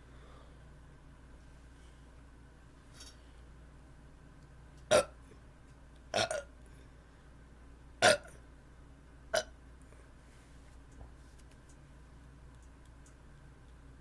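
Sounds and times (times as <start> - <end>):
woman burping: 6.1 - 6.5.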